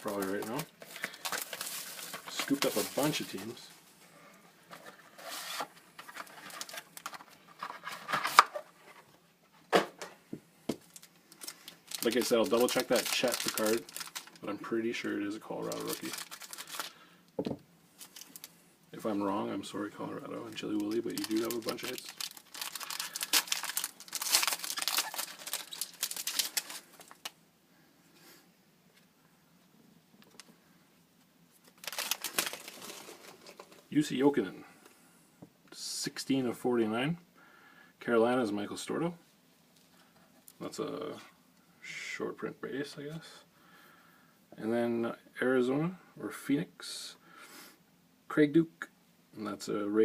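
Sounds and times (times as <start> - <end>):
cards and packaging rustling: 0.0 - 3.7, 4.6 - 9.0, 10.7 - 18.5, 20.2 - 27.4, 31.6 - 34.0.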